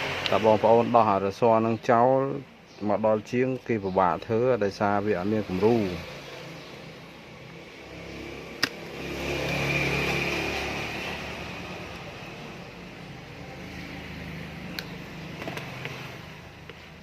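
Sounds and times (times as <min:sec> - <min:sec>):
passing motor vehicle engine: 0:00.0 - 0:01.2, 0:05.0 - 0:17.0
sharp clicks: 0:08.6 - 0:08.8.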